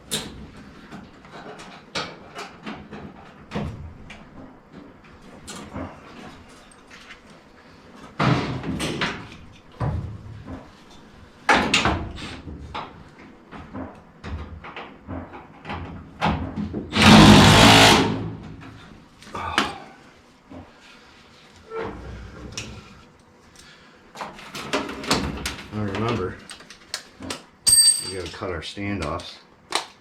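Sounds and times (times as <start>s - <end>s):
noisy burst: 17.0s - 18.6s.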